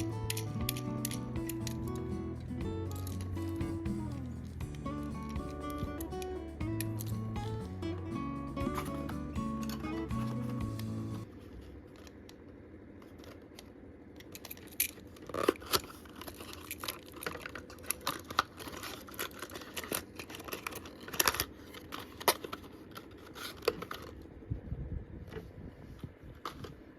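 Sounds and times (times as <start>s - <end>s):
cardboard packaging being handled: 15.1s - 24.3s.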